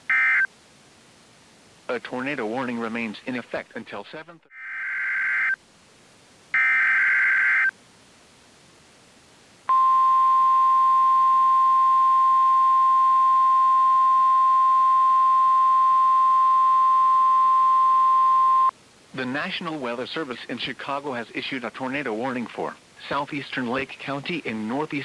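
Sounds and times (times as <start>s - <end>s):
steady warning alarm tone: 9.7s - 18.7s.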